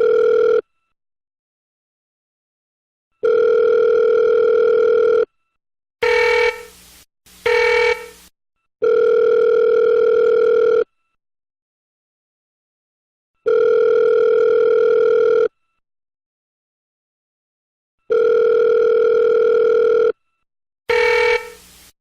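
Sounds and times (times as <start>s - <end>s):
buzzy telephone tone: 0.0s - 0.6s, 3.2s - 5.3s, 6.0s - 6.7s, 7.4s - 8.2s, 8.8s - 10.9s, 13.5s - 15.5s, 18.1s - 20.1s, 20.9s - 21.7s
telephone ringback tone: 0.0s - 0.6s, 3.2s - 5.3s, 6.0s - 6.7s, 7.4s - 8.2s, 8.8s - 10.9s, 13.5s - 15.5s, 18.1s - 20.2s, 20.9s - 21.6s.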